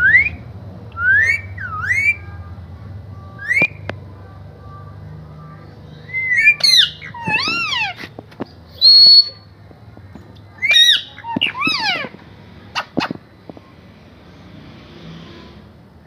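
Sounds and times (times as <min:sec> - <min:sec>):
parrot whistling and squawking: 0:01.0 - 0:02.3, 0:06.1 - 0:08.0, 0:08.8 - 0:09.5, 0:10.6 - 0:13.2.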